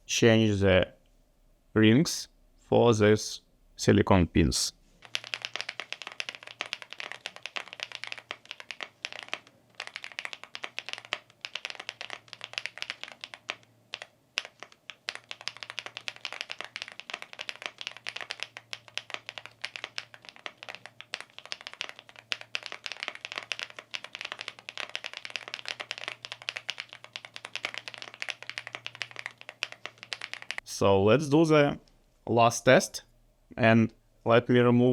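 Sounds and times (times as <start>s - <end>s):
mechanical keyboard typing: 5.0s - 30.6s.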